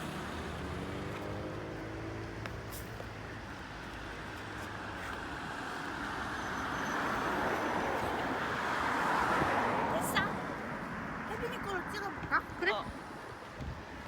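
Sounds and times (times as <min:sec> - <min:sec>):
car road and engine noise: 0:00.0 - 0:14.0.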